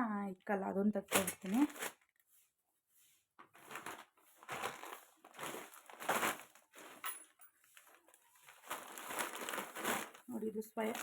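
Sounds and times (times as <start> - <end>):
plastic packets crinkling: 1.0 - 2.2, 3.4 - 11.0.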